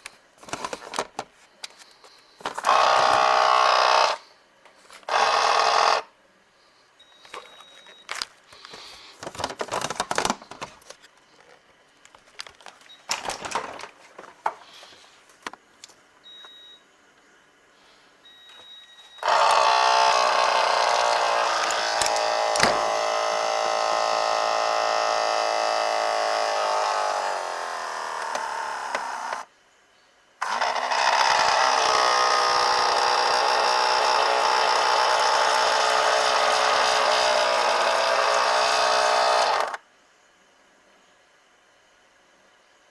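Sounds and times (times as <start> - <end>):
fridge ice maker buzzing whir: 2.4 - 4.3, 5.0 - 6.1, 18.3 - 29.5, 30.4 - 39.9
short beeps: 16.3 - 16.8.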